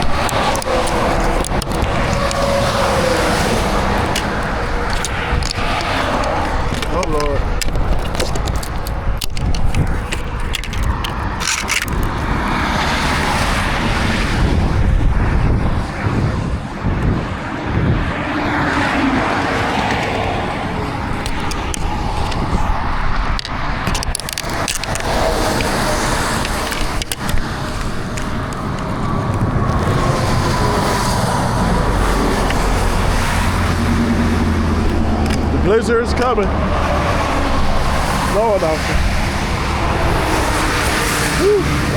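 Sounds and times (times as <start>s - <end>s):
knocks and scrapes: 0.0s - 13.5s, 19.8s - 41.3s
loud vehicle rumble: 0.0s - 41.9s.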